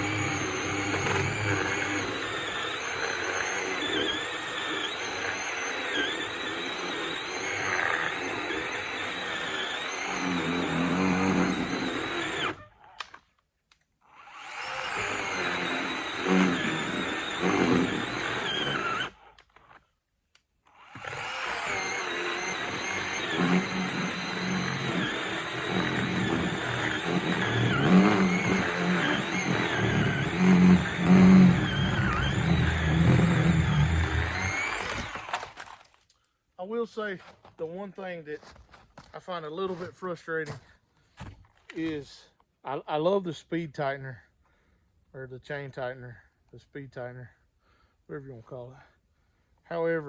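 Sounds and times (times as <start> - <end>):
cordless chainsaw cutting log: 0.0 - 13.2, 14.0 - 19.8, 20.7 - 35.9.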